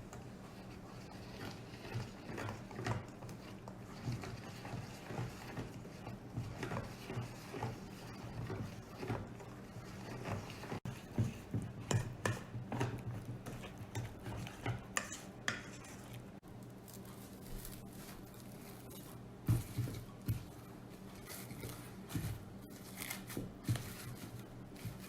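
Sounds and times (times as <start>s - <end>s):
utensils clinking against bowl: 1.2s - 16.2s.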